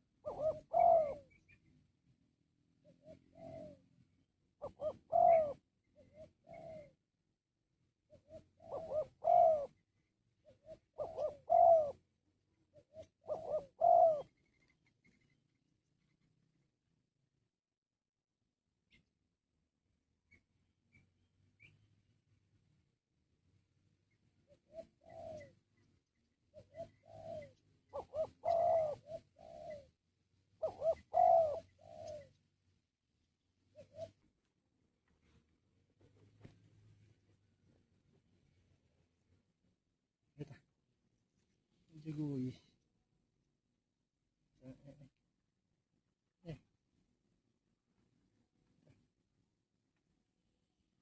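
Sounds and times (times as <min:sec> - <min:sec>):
dove cooing: 0:00.0 - 0:01.6, 0:02.8 - 0:04.0, 0:04.6 - 0:07.0, 0:08.1 - 0:09.8, 0:10.4 - 0:12.1, 0:12.7 - 0:14.7, 0:24.5 - 0:25.7, 0:26.5 - 0:30.0, 0:30.6 - 0:32.4, 0:33.6 - 0:34.4.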